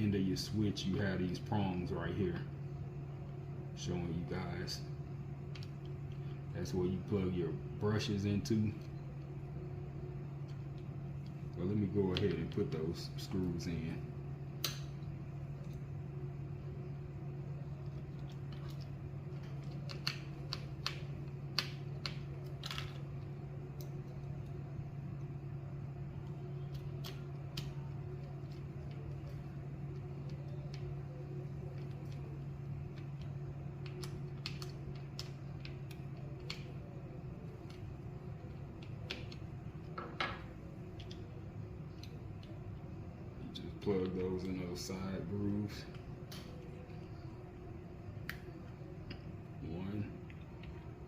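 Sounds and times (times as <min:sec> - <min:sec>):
steady low hum: 0:00.0 - 0:51.0.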